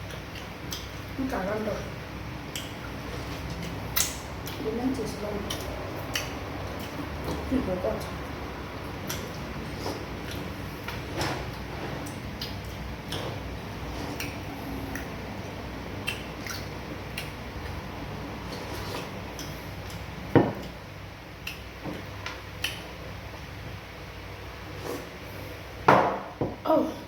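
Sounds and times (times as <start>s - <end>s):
chewing clicks and smacks: 5.4s - 7.5s, 16.0s - 17.8s, 21.4s - 21.7s, 22.6s - 22.8s.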